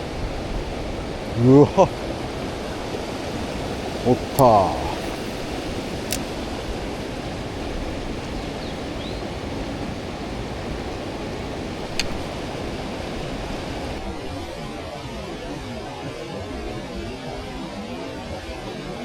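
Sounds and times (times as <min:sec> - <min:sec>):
mountain stream rushing: 0:00.1 - 0:14.7
sharp click: 0:11.9 - 0:12.3.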